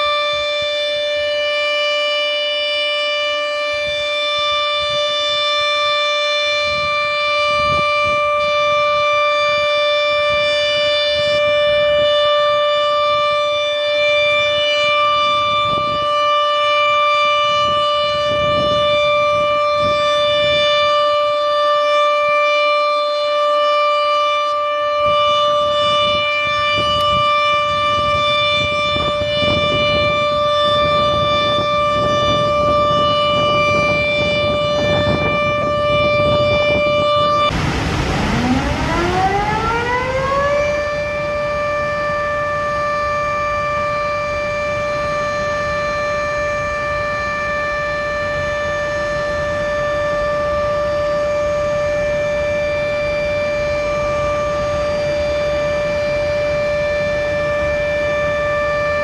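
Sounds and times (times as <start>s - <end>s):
warning siren steady tone: 0.0s - 59.0s
low rumbling noise: 26.4s - 42.1s.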